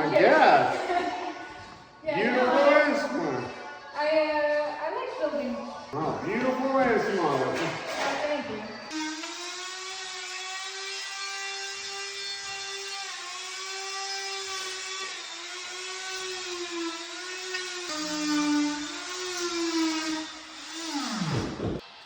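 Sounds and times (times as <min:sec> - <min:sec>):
power tool motor whine: 0:08.8 - 0:21.9.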